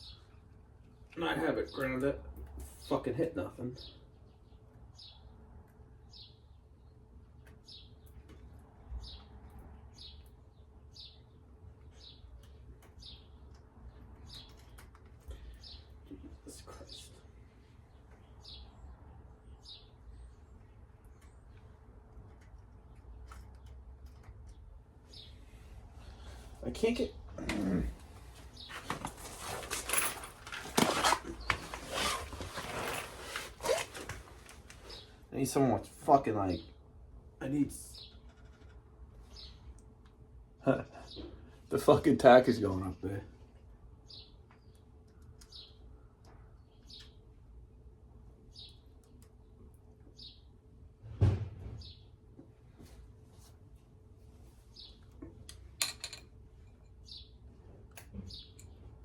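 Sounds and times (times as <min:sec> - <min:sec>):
bird chirping: 0:00.0 - 0:02.0, 0:03.8 - 0:05.4, 0:06.0 - 0:21.8, 0:22.8 - 0:25.4, 0:44.0 - 0:47.3, 0:48.5 - 0:50.6, 0:54.7 - 0:55.1, 0:56.6 - 0:57.4, 0:58.0 - 0:59.0
low thump: 0:51.0 - 0:51.8.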